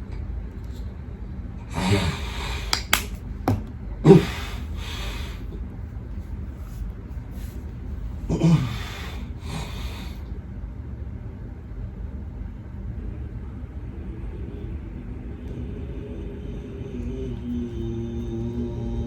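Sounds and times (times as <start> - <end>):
man snoring: 1.7 - 2.8, 8.3 - 10.2.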